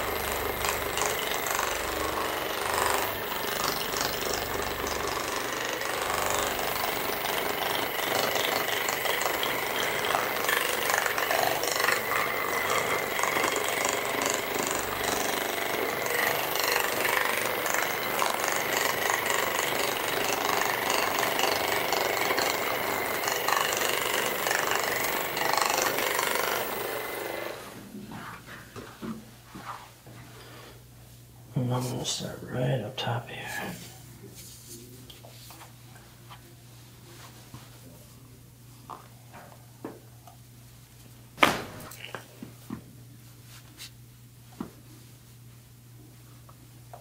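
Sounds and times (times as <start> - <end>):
massage gun whine and pulsing: 0.0 - 29.2.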